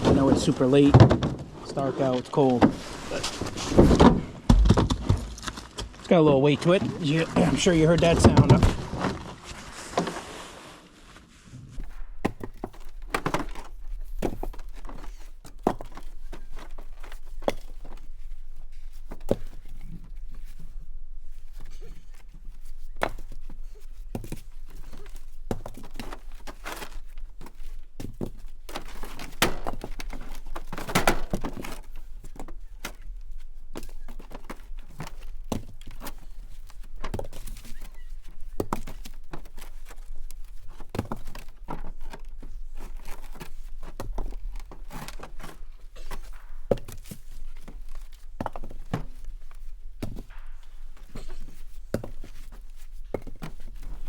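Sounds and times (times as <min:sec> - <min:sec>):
firewood landing with thunks: 0:00.0 - 0:01.8, 0:02.4 - 0:06.0, 0:06.8 - 0:10.2, 0:11.8 - 0:16.0, 0:28.0 - 0:33.0.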